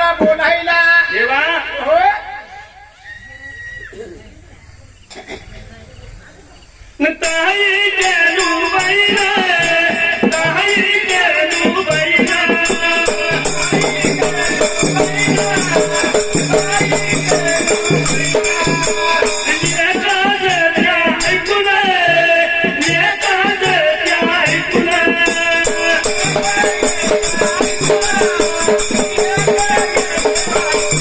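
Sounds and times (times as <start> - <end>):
fast jingling percussion: 6.6 - 31.0.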